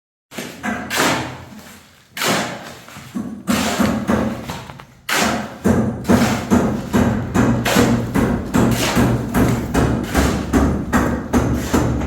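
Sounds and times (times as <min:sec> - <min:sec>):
deep booming hits: 0:07.0 - 0:12.0.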